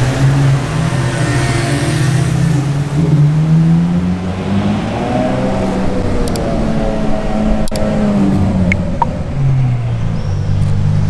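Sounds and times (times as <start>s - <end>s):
car engine revving low: 0.0s - 11.0s.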